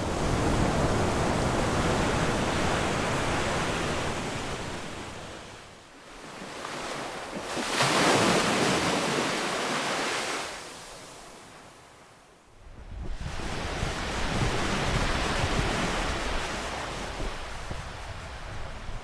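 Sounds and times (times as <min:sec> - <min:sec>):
ocean waves breaking: 0:00.0 - 0:11.9.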